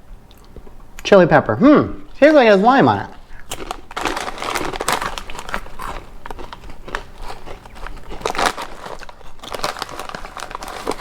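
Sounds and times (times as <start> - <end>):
chips being chewed: 2.1 - 11.0.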